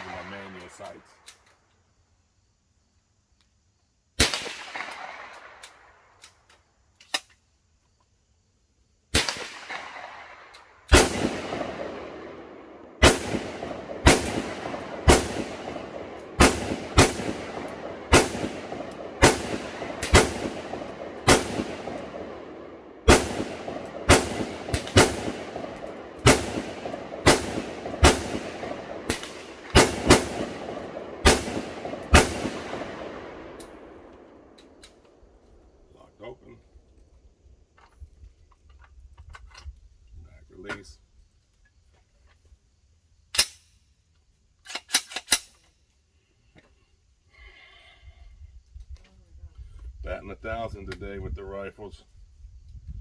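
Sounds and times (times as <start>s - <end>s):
rifle shots with echo: 0.0s - 1.3s, 4.2s - 6.0s, 9.1s - 34.8s.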